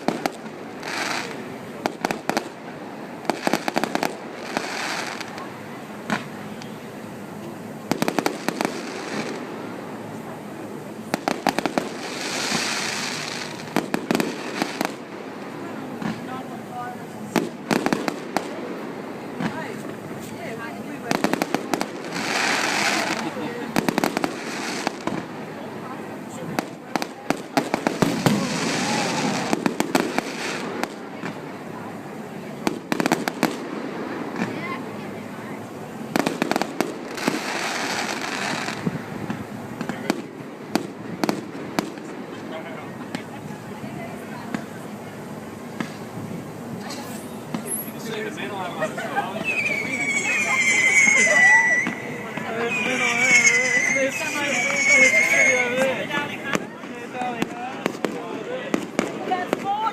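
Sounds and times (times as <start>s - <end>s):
fireworks crackling: 0.0s - 59.9s
firework bang: 26.5s - 31.4s.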